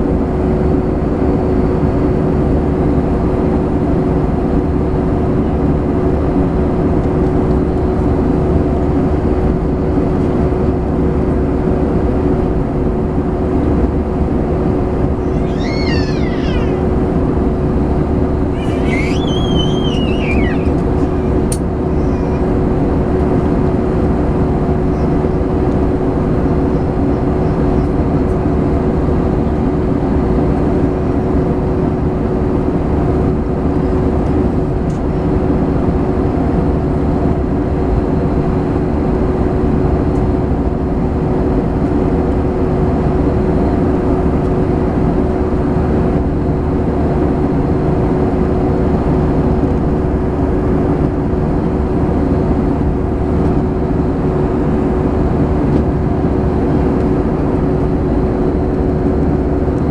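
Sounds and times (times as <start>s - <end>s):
jet engine and airflow rush: 6.1s - 30.6s
steady cabin hum: 12.3s - 29.4s
high rising and falling cry: 15.2s - 17.4s, 18.3s - 22.4s.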